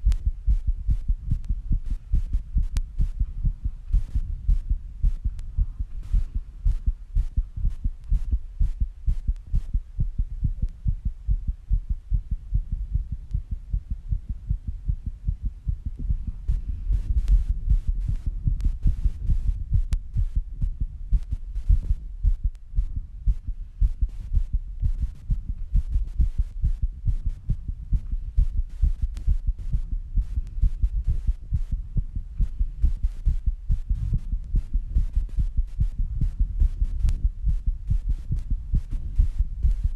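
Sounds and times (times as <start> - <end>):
heartbeat thudding: 0.0 - 39.9.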